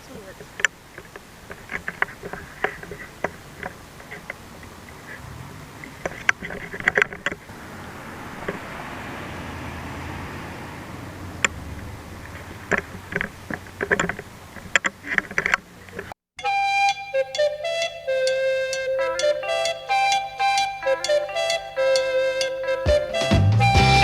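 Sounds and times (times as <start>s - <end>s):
vehicle rushing past: 4.7s - 6.4s, 7.4s - 14.5s.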